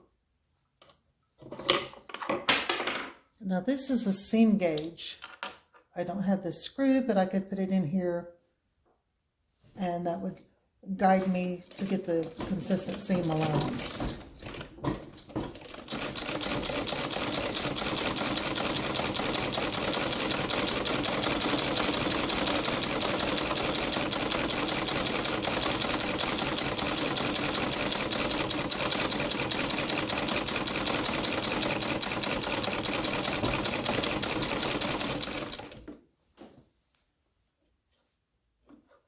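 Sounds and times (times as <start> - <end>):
treadle sewing machine stitching: 11.2 - 36.0.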